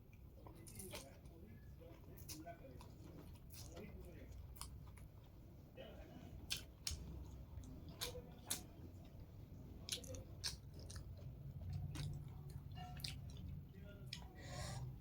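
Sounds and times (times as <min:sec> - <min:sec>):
person chewing noodles: 0:06.4 - 0:15.0.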